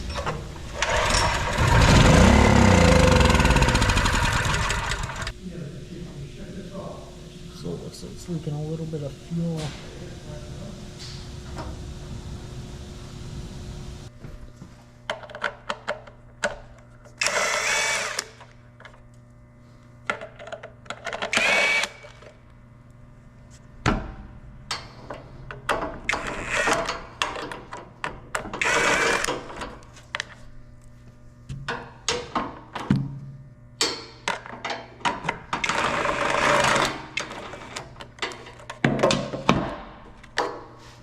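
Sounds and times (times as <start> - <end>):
power drill running: 0.7 - 5.3, 17.2 - 18.4, 21.3 - 22.2, 28.6 - 29.4, 35.6 - 37.8.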